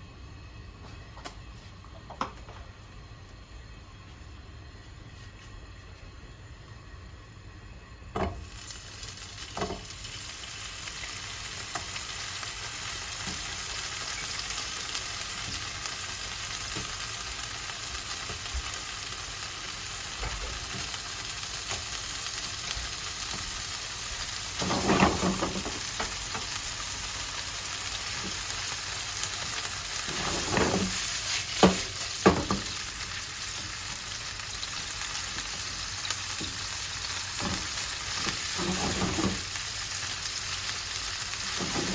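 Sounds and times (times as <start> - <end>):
food sizzling in frying pan: 8.2 - 41.9
utensil scraping pan: 30.1 - 31.9, 38.5 - 39.4, 41.5 - 41.9.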